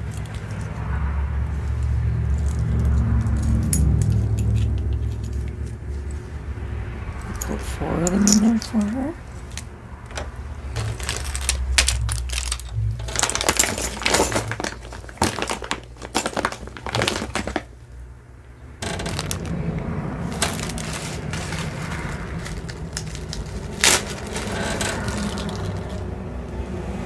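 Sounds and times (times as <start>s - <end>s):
steady low hum: 5.1s - 15.2s
plastic packaging crinkling: 10.8s - 17.8s, 18.8s - 26.0s.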